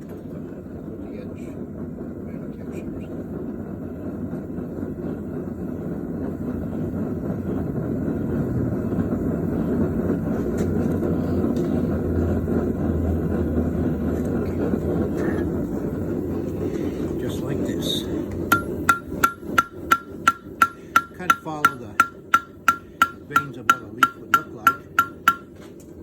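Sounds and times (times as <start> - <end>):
gas torch flame roaring: 0.0 - 26.0.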